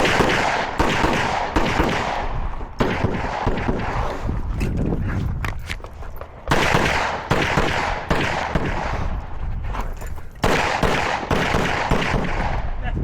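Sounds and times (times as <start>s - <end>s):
pistol shots: 0.0s - 4.1s, 6.5s - 9.1s, 10.4s - 12.8s.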